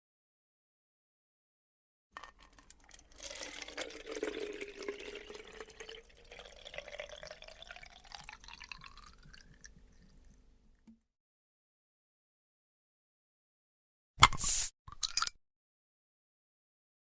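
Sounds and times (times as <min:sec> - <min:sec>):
liquid pouring into bottle: 0:02.2 - 0:10.4.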